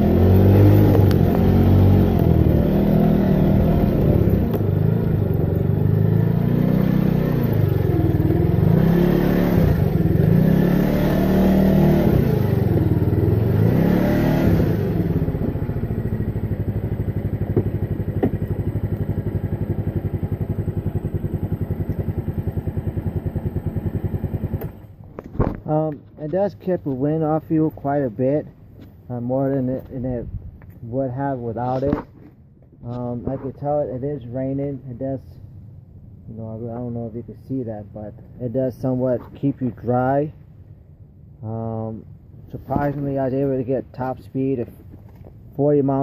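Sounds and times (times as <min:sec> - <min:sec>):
moped engine running: 0:00.0 - 0:25.4.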